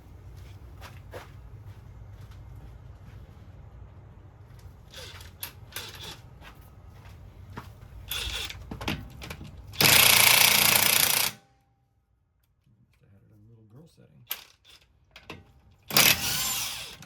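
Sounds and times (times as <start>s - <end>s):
tools clicking and knocking: 4.9s - 6.2s
impact wrench hammering: 8.1s - 11.4s, 15.9s - 17.0s.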